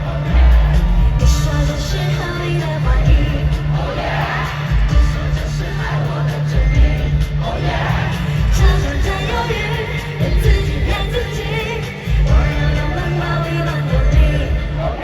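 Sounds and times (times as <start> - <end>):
crowd yelling: 0.0 - 10.4
heavy bass beat: 0.0 - 15.0
live dance-pop music: 0.0 - 15.0
person singing: 0.0 - 15.0.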